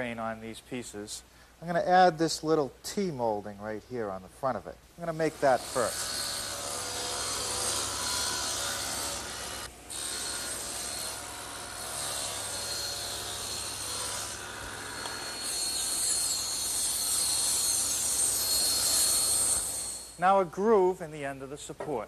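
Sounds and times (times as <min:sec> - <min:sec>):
power tool cutting wood: 0:05.2 - 0:20.2.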